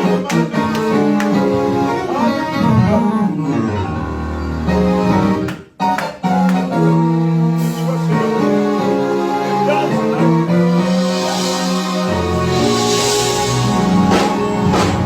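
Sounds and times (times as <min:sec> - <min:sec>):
church band music: 0:00.0 - 0:15.0
held keyboard chords: 0:00.0 - 0:15.0
bass line: 0:10.4 - 0:15.0.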